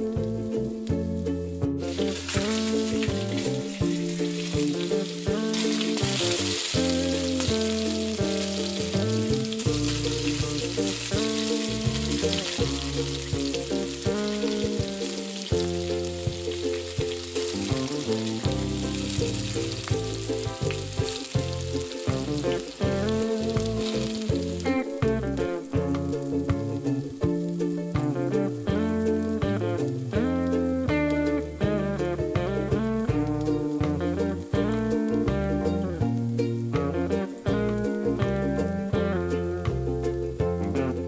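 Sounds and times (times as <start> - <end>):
background music with held notes: 0.0 - 41.0
food sizzling in a pan: 1.7 - 38.7.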